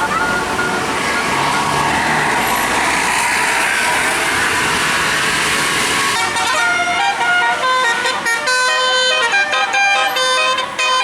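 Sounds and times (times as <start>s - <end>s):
bus passing by: 0.0s - 11.0s
multi-tone horn melody: 6.2s - 11.0s.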